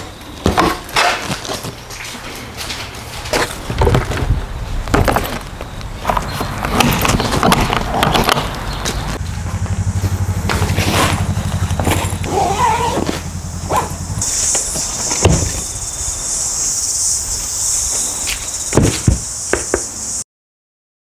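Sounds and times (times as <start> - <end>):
knocks and thumps: 3.3 - 15.7, 18.7 - 20.0
engine running with fast pulse: 6.0 - 17.7
steady high hiss: 9.2 - 20.2.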